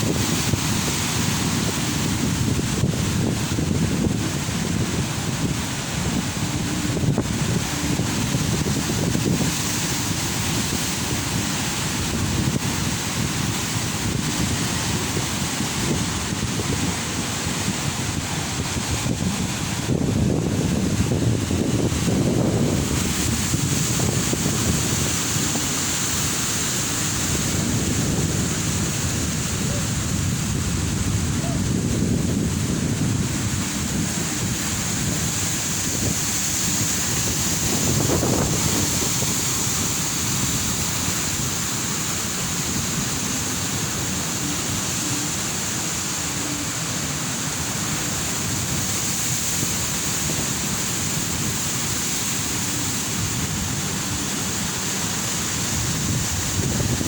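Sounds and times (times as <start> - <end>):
ocean surf washing in: 0.0 - 57.0
wind rumbling on microphone: 0.0 - 57.0.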